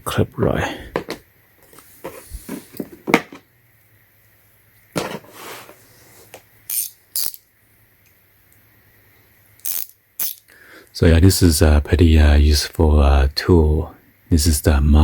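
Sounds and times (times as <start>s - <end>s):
short scrape: 5.0s - 6.3s.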